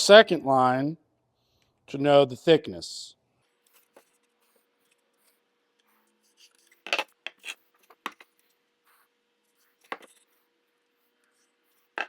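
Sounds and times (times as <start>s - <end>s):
tools scraping on wooden board: 6.4s - 8.3s.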